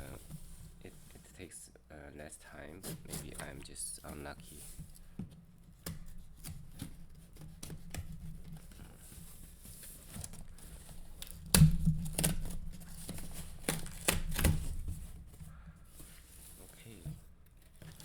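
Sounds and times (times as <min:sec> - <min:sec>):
packaging tearing and rustling: 0:06.0 - 0:15.2, 0:17.6 - 0:18.0.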